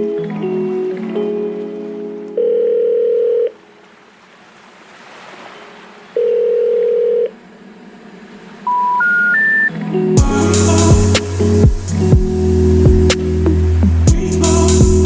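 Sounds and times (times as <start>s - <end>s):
telephone ringback tones: 2.4s - 3.6s, 6.2s - 7.3s, 8.7s - 9.7s
rising three-tone signal: 8.6s - 13.8s.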